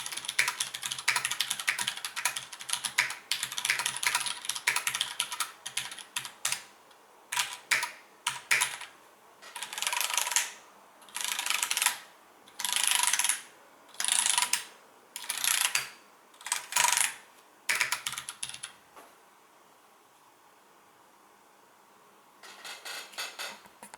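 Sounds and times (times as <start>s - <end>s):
mechanical keyboard typing: 0.0s - 6.7s, 7.3s - 8.9s, 9.5s - 18.8s.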